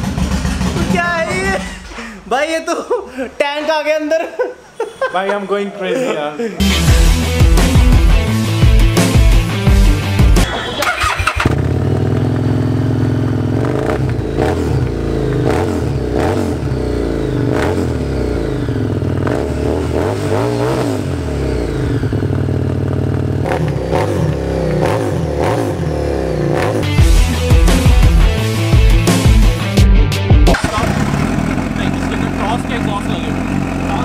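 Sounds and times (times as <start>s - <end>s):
motorcycle engine blipping: 10.4s - 19.4s.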